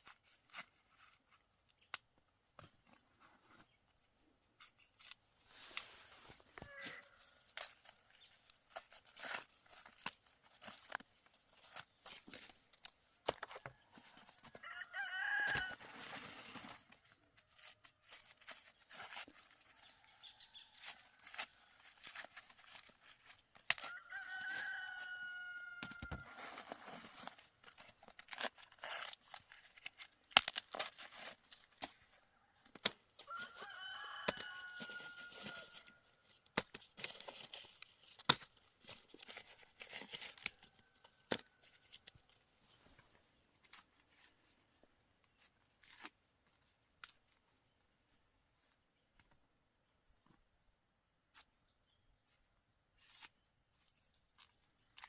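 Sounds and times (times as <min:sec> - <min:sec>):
rooster crowing: 0:14.0 - 0:15.8, 0:23.9 - 0:26.5, 0:33.3 - 0:36.0
crackling and tearing clicks: 0:28.1 - 0:31.9.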